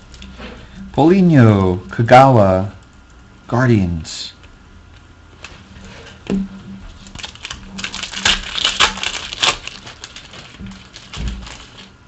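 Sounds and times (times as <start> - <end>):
cards and foil wrappers crinkling: 6.9 - 12.0.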